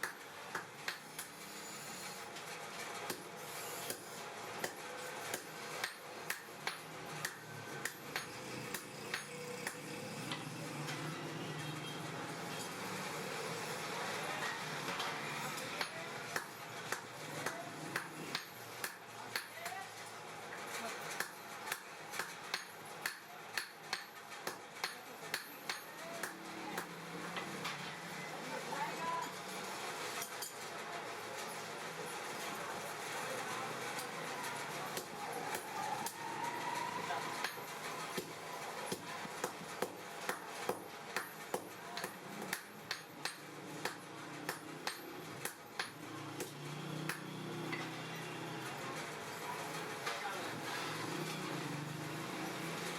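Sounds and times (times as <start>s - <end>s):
hammer striking steel on anvil: 3.1s - 10.5s, 15.0s - 19.8s, 21.2s - 27.5s, 37.4s - 48.0s.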